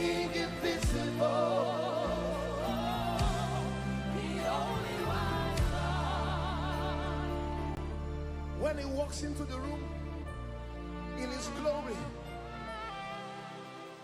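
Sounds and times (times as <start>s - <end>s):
voices singing with vibrato: 0.0s - 8.0s
keyboard and bass chords: 0.0s - 13.4s.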